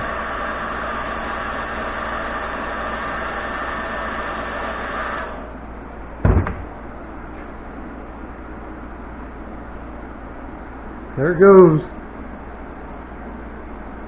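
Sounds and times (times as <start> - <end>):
heat gun blowing: 0.0 - 5.6.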